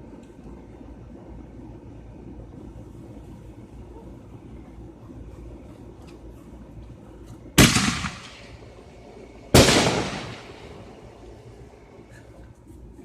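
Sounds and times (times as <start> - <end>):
loud firework bangs: 7.6 - 8.6, 9.5 - 11.0.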